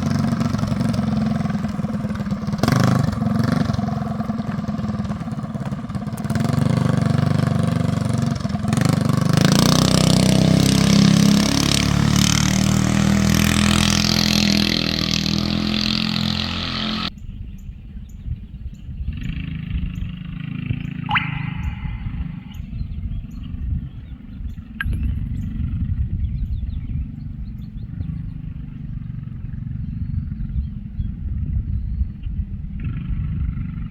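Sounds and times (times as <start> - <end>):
small gasoline engine revving: 0.0 - 17.1, 32.6 - 33.9.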